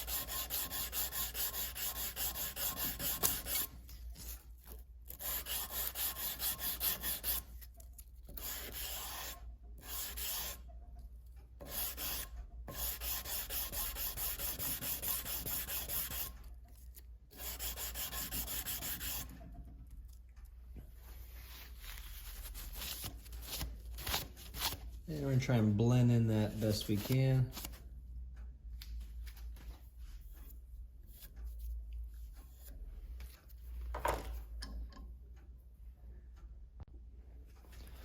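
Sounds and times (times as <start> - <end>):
sandpaper rubbing on steel blade: 0.0 - 3.7, 5.1 - 7.5, 8.4 - 10.6, 11.6 - 16.3, 17.3 - 19.3.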